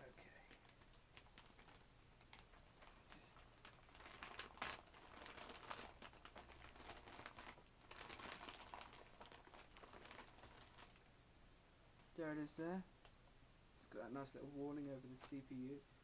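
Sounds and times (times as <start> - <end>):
packaging crinkling: 0.2 - 11.1.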